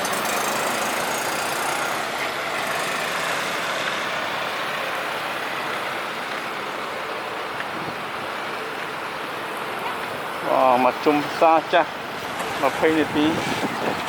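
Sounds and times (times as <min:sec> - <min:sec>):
vehicle rushing past: 0:00.0 - 0:06.7.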